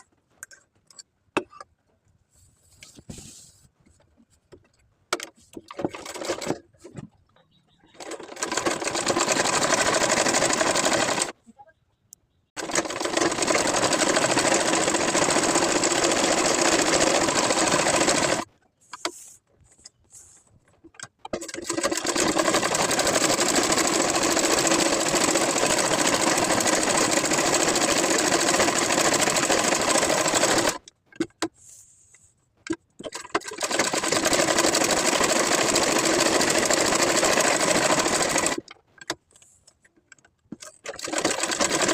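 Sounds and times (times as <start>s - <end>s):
sewing machine stitching: 5.2s - 6.9s, 7.9s - 11.4s, 12.6s - 18.5s, 21.3s - 30.9s, 33.0s - 38.7s, 40.5s - 41.9s.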